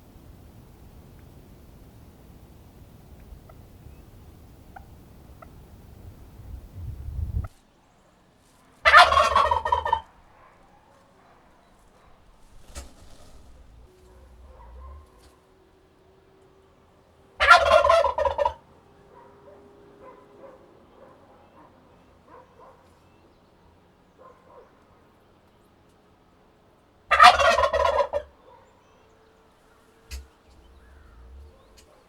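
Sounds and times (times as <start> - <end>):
turkey gobbling: 0.0 - 7.5, 8.8 - 10.2, 12.1 - 15.3, 17.4 - 18.7, 27.1 - 28.3, 30.0 - 32.0.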